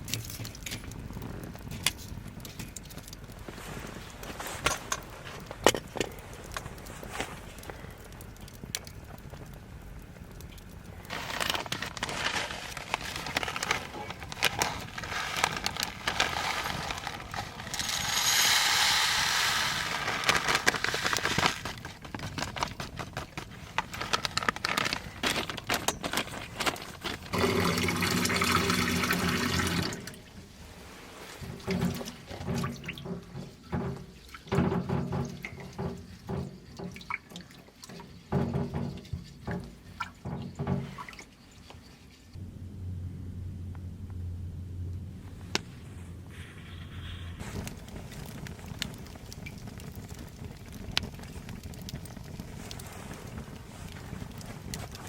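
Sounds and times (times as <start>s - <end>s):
clicks and handling sounds: 0.0s - 9.6s, 10.4s - 18.9s, 19.8s - 27.8s
liquid pouring: 11.1s - 21.6s, 27.1s - 30.4s
bright hissing: 17.4s - 21.1s.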